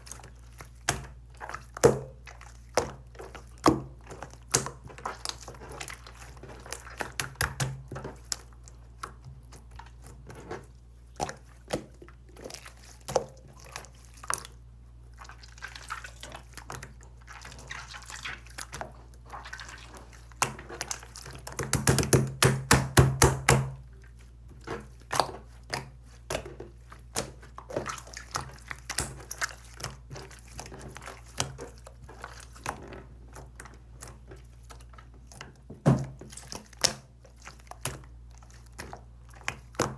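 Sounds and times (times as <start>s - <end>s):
slime squeezed wet sticky pops: 15.3s - 23.9s.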